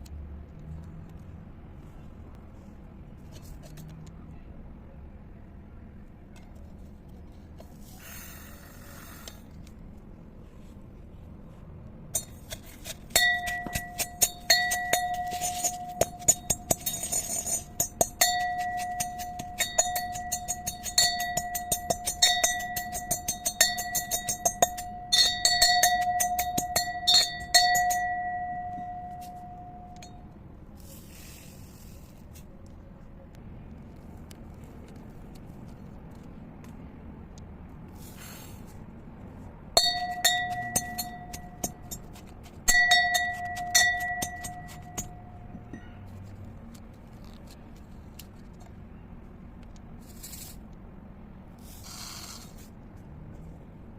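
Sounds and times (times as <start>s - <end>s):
utensil clinking on glass: 13.1s - 30.2s, 39.8s - 45.9s.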